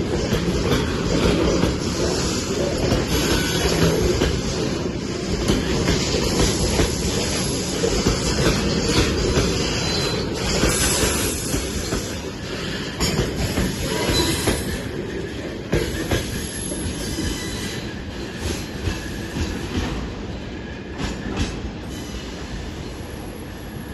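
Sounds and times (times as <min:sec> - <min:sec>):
train wheels knocking over rail joints: 0:00.0 - 0:17.4
high wheel squeal: 0:09.6 - 0:13.1, 0:13.8 - 0:14.8, 0:15.9 - 0:19.2.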